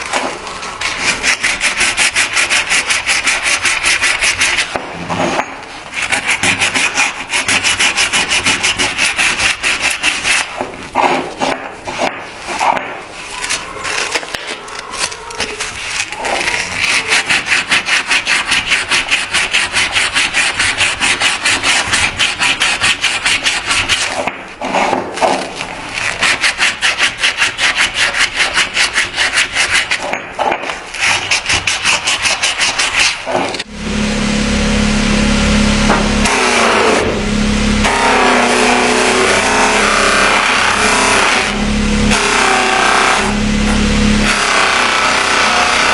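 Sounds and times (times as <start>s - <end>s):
steady motor hum: 31.4s - 45.9s.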